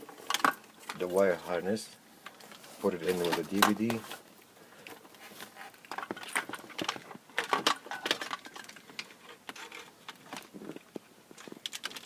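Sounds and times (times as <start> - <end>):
plastic plugs clicking and rattling: 5.8 - 12.0.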